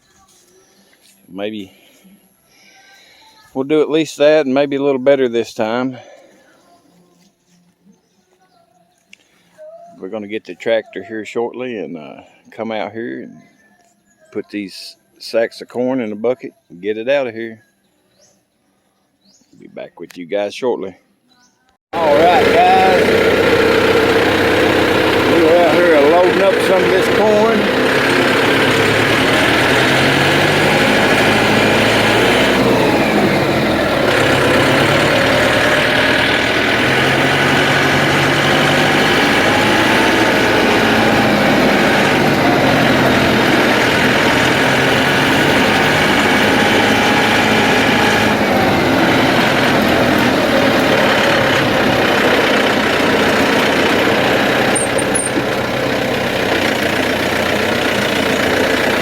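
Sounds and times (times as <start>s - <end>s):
tractor engine running: 22.0s - 59.0s.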